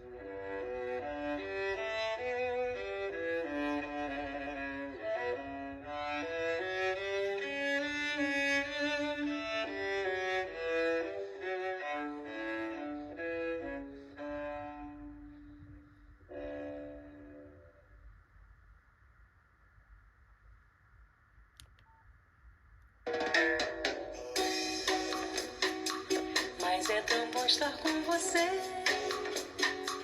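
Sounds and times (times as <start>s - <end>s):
polyphonic ringtone melody: 24.1s - 27.4s.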